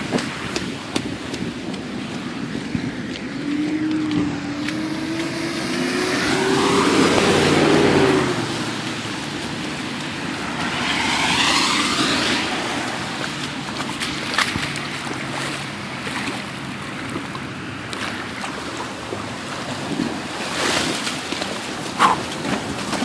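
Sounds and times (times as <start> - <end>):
vehicle splashing past: 0.0 - 23.0
car engine: 2.0 - 19.3.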